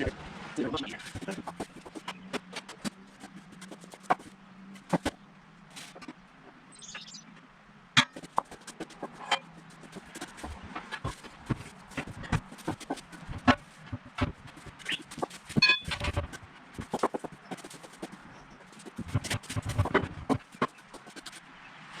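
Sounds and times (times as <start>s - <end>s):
knocks and clanks on tire rim: 8.0s - 8.5s.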